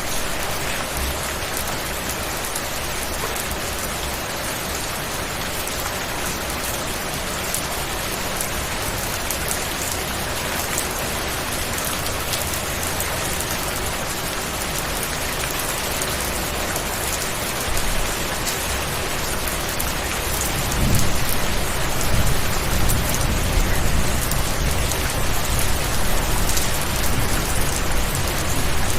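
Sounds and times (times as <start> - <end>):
dense rain pattering: 0.0 - 28.9.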